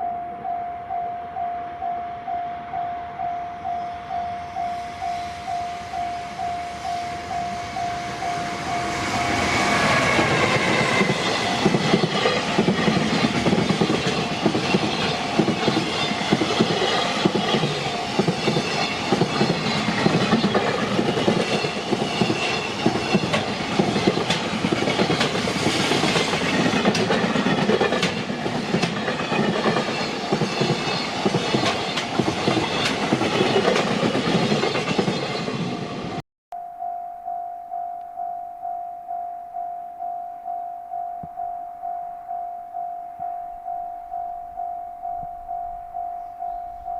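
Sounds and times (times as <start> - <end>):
level crossing warning bell: 0.0 - 35.5, 36.6 - 46.9
freight train rushing past: 0.4 - 36.2
train wheels clacking on rails: 4.6 - 36.2.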